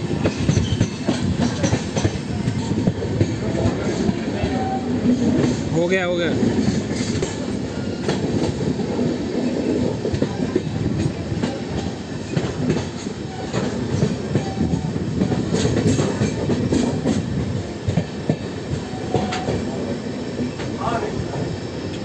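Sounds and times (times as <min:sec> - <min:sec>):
wheels clacking on rail joints: 0:00.0 - 0:22.0.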